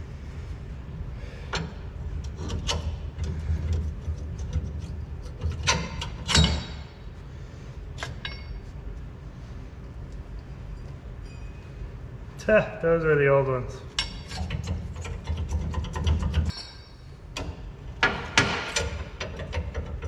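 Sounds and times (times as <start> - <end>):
steady low hum: 0.0 - 20.0
metal clanks and knocks: 1.5 - 7.0, 8.0 - 8.8, 13.9 - 20.0
metal ringing: 8.0 - 8.8, 16.4 - 19.2.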